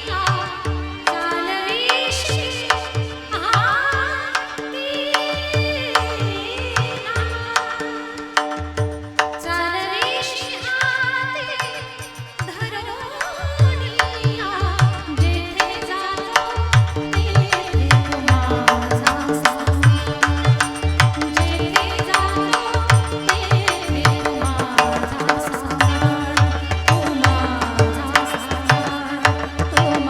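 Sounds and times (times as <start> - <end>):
woman singing: 0.0 - 8.8, 9.4 - 30.0.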